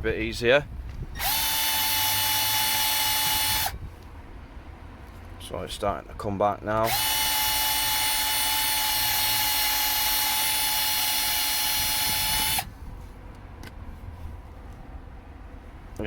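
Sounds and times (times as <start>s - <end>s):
electric drill sanding metal: 1.2s - 3.8s, 6.8s - 12.7s.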